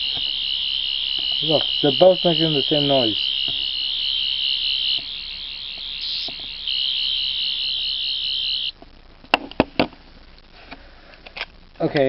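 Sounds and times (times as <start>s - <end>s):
toy warbling electronic buzz: 0.0s - 8.7s.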